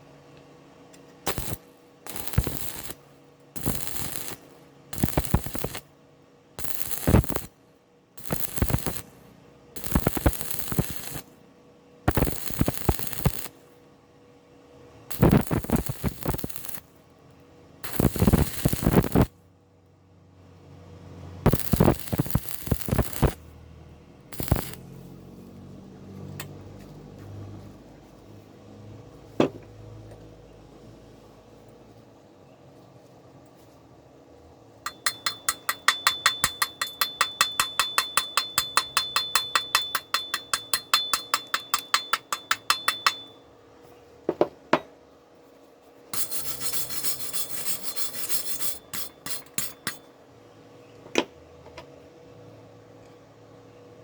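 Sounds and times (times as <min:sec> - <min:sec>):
arc welding crackling: 0:01.2 - 0:05.9, 0:06.6 - 0:07.6, 0:08.2 - 0:11.4, 0:12.1 - 0:13.8, 0:15.1 - 0:17.1, 0:17.8 - 0:19.4, 0:21.4 - 0:23.6, 0:24.2 - 0:26.4, 0:34.9 - 0:43.4, 0:46.2 - 0:50.1.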